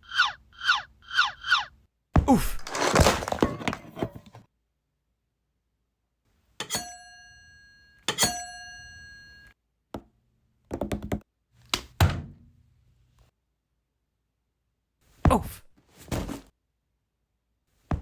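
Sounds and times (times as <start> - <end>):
microwave oven dings: 6.6 - 9.5.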